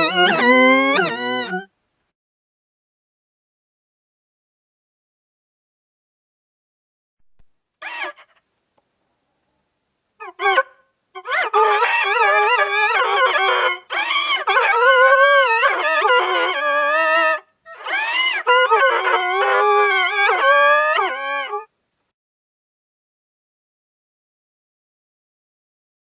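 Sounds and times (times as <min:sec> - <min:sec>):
cartoon character wailing sobs: 0:00.0 - 0:01.7, 0:10.2 - 0:21.7.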